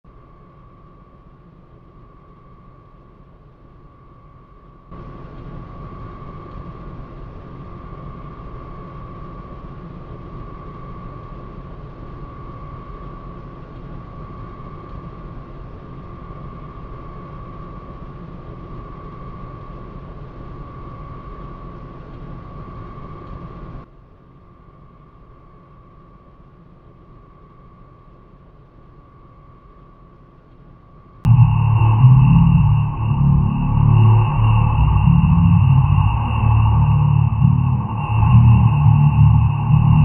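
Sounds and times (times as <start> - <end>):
rumbling drone with humming tone: 31.3 - 40.0.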